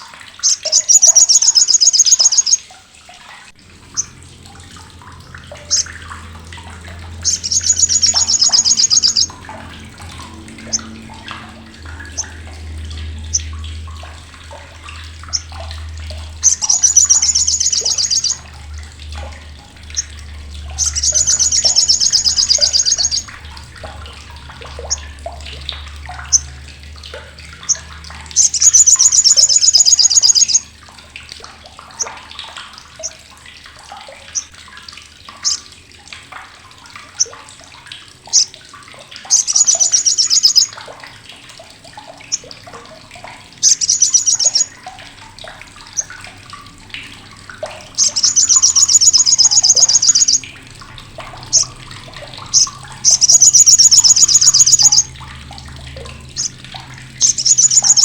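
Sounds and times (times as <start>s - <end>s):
bird chattering call: 0.4s - 2.6s, 7.2s - 9.4s, 16.4s - 18.4s, 20.8s - 23.3s, 28.4s - 30.6s, 39.3s - 40.7s, 43.6s - 44.7s, 48.0s - 50.4s, 52.5s - 55.1s, 57.2s - 58.0s
bird chips: 0.4s - 2.6s, 16.4s - 18.4s, 20.8s - 23.3s, 48.0s - 50.4s, 52.5s - 55.1s, 57.2s - 58.0s.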